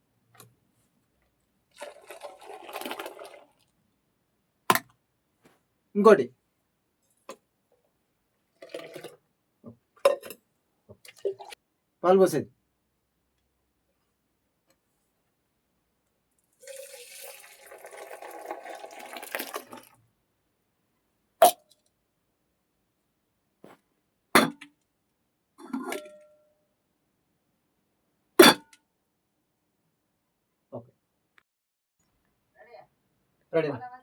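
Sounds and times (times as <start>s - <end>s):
liquid pouring into a vessel: 1.7s - 3.8s, 8.5s - 9.2s, 11.0s - 11.6s, 16.5s - 20.0s.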